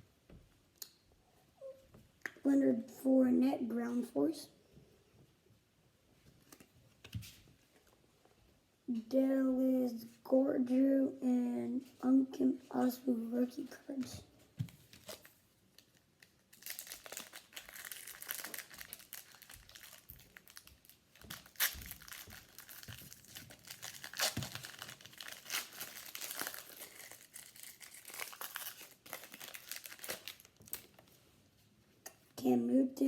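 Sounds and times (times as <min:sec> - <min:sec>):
foil wrapper tearing and crinkling: 0:14.7 - 0:31.1.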